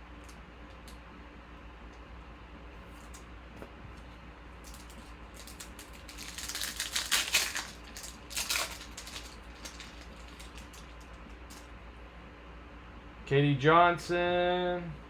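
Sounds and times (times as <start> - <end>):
cards shuffling: 4.6 - 11.6.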